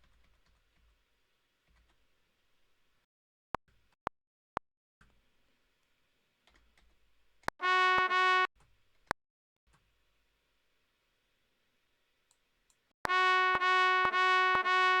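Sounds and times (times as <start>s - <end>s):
brassy synthesized trumpet tone: 7.6s - 8.5s, 13.1s - 15.0s.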